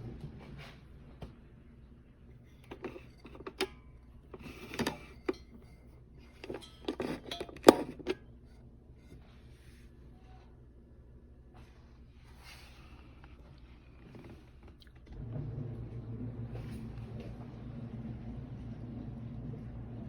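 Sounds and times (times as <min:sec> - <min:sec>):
objects clattering: 0:02.5 - 0:08.3.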